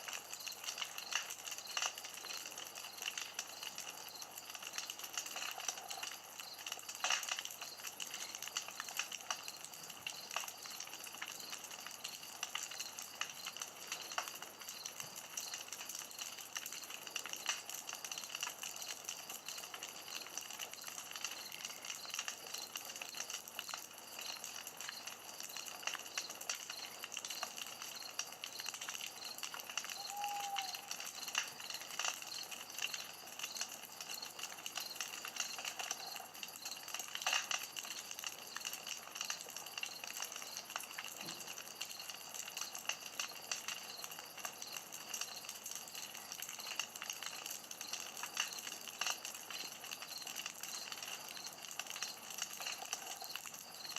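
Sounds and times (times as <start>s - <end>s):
campfire crackling: 0.0s - 53.9s
faint whistle: 29.9s - 31.0s.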